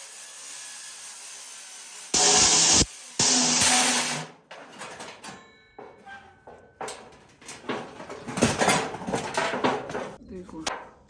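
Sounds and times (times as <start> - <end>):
tin sheets knocking and scraping: 4.5 - 10.2
tin sheets clattering: 6.8 - 10.2.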